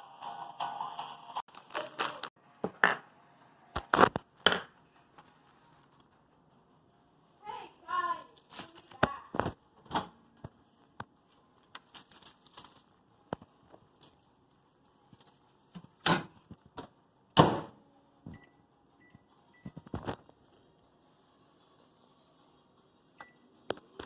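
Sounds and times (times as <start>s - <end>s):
microwave oven beeps: 18.3s - 19.8s, 23.2s - 23.6s.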